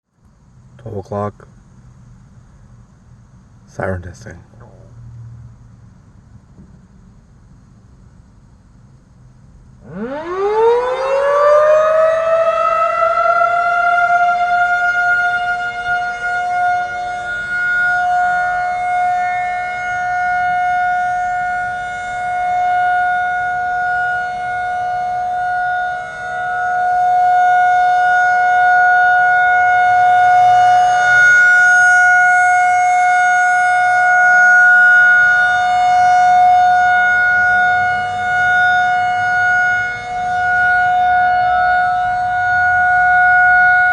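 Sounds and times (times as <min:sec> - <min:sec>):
tornado warning siren: 0:09.8 - 0:43.9.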